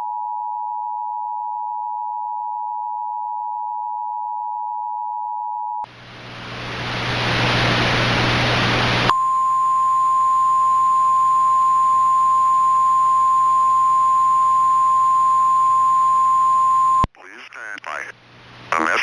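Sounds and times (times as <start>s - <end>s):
static hiss: 5.9s - 9.1s, 9.8s - 19.0s
steady alarm tone: 9.1s - 17.1s.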